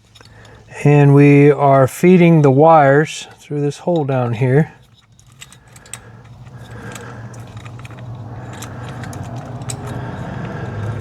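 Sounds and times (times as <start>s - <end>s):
light metallic clicks and rattles: 0.0s - 1.0s, 3.3s - 11.0s
steady low hum: 4.4s - 11.0s.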